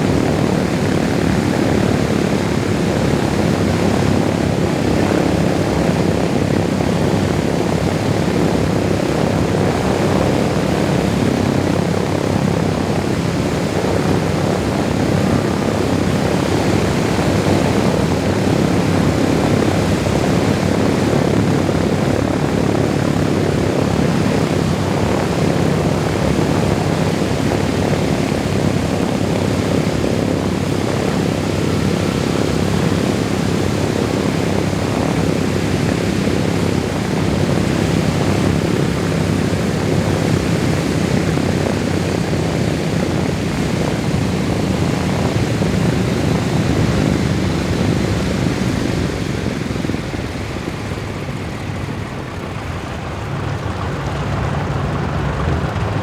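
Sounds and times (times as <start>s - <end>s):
propeller noise: 0.0s - 56.0s
radial engines droning: 50.1s - 56.0s.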